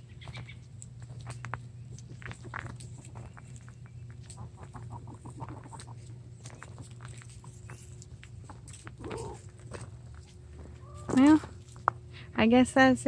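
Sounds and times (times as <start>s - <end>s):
steady low hum: 0.0s - 13.0s
light clicks and scratching: 0.8s - 10.4s
poultry calling: 3.0s - 6.2s, 9.0s - 9.5s, 10.6s - 11.4s.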